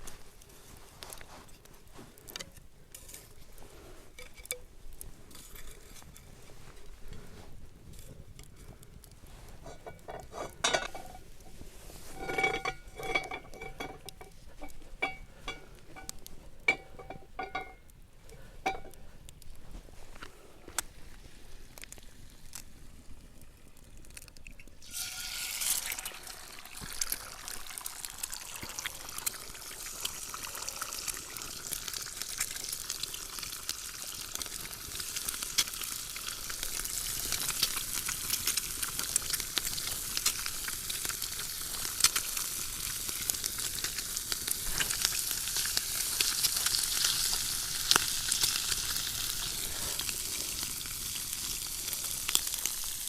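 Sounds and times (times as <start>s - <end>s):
food sizzling in hot oil: 24.8s - 53.0s.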